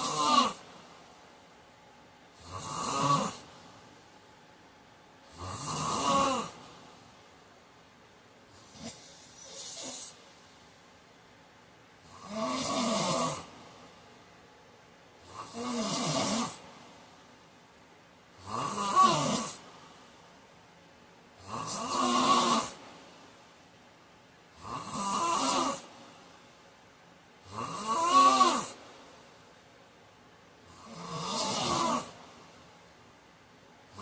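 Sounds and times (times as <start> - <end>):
man snoring: 0.0 - 0.6, 2.4 - 3.5, 5.3 - 6.7, 8.6 - 10.2, 12.0 - 13.5, 15.2 - 16.6, 18.4 - 19.6, 21.4 - 22.8, 24.6 - 25.9, 27.4 - 28.8, 30.7 - 32.2.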